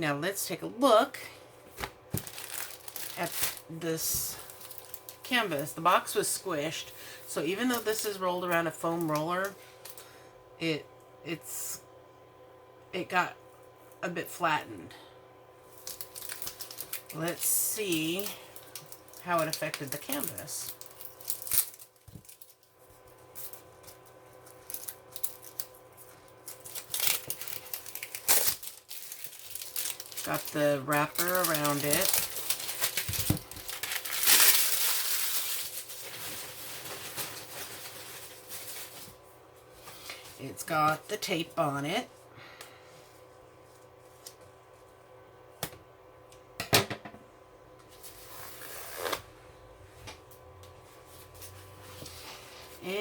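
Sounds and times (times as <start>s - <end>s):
plastic wrapper rustling: 1.7s - 6.0s, 7.5s - 10.0s, 15.6s - 39.2s.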